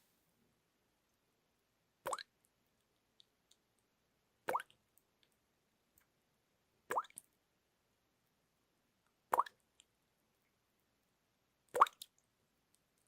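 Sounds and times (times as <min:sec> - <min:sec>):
faint small drips: 0:01.0 - 0:07.4, 0:08.2 - 0:13.0
water drops plopping into water: 0:02.0 - 0:02.4, 0:04.5 - 0:04.8, 0:06.9 - 0:07.3, 0:09.3 - 0:09.6, 0:11.7 - 0:12.2.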